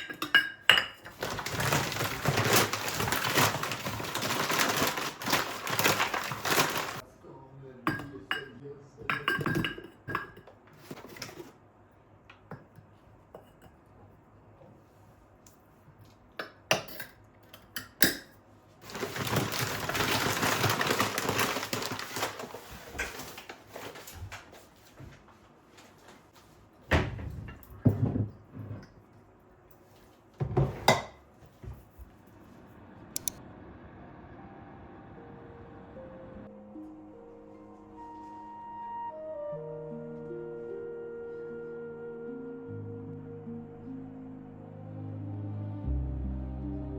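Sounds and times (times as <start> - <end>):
dishes and utensils clinking: 0.0 - 7.0, 7.9 - 11.5
dishes clattering: 0.0 - 7.0, 7.9 - 11.5, 30.4 - 31.2.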